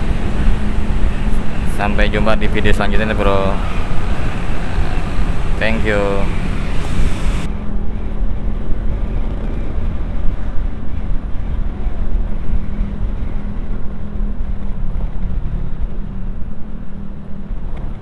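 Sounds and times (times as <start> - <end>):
motorcycle engine running: 0.0 - 18.0
road and wind noise: 0.0 - 18.0.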